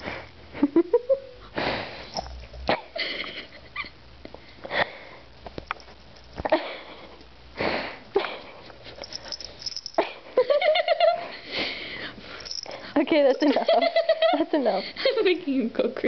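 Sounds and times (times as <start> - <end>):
breathy puffs and sniffs: 0.0 - 0.4, 1.4 - 3.3, 6.8 - 10.0.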